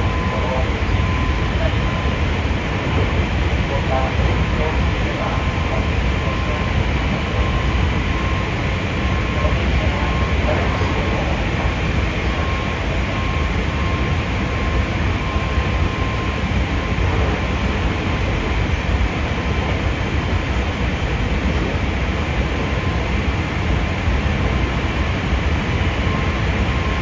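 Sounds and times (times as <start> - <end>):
faint high whine: 0.0 - 21.6.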